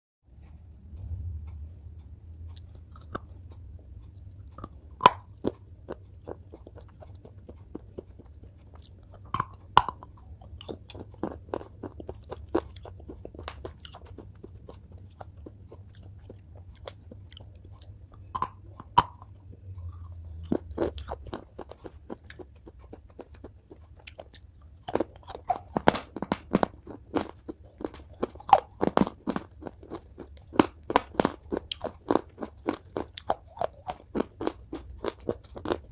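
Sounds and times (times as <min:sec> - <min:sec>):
low hum: 0:00.3 - 0:22.6
crunching brittle candy: 0:05.0 - 0:19.2, 0:19.9 - 0:35.9.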